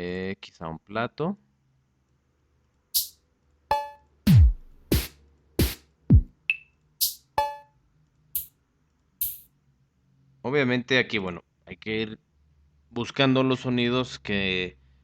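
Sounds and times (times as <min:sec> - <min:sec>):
electronic cymbal hits: 0:03.0 - 0:07.6, 0:09.2 - 0:09.5
deep electronic kick drums: 0:03.7 - 0:07.6
pitched ringing drum hits: 0:03.7 - 0:07.6.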